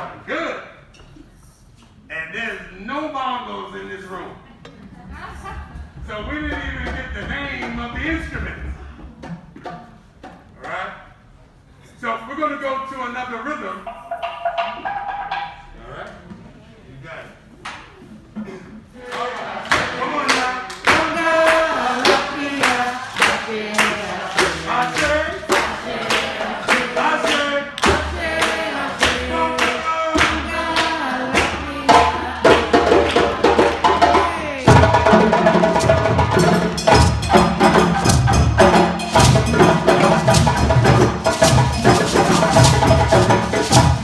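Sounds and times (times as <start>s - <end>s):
deeper drums: 5.0s - 9.9s, 20.9s - 44.0s
hand drums playing a rhythm: 5.1s - 10.4s, 13.9s - 15.6s, 19.6s - 44.0s.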